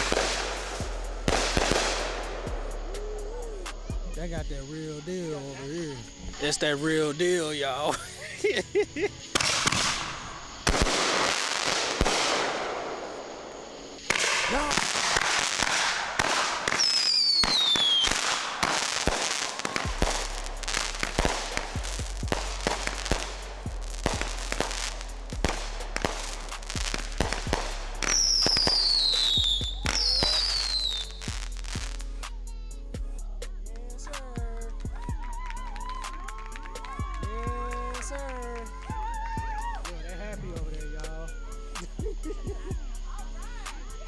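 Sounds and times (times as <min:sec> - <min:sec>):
sharp firework cracks: 0:00.0 - 0:04.0, 0:05.6 - 0:32.5
descending firework whistles: 0:00.0 - 0:32.4, 0:34.8 - 0:44.0
firework bursts: 0:00.0 - 0:44.0.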